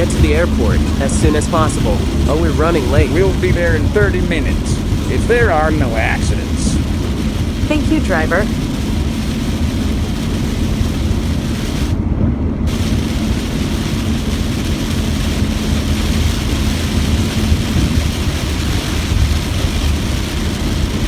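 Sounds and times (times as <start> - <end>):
higher hiss: 0.0 - 8.8
faint hum: 0.0 - 10.2
van road and engine noise: 0.0 - 21.0.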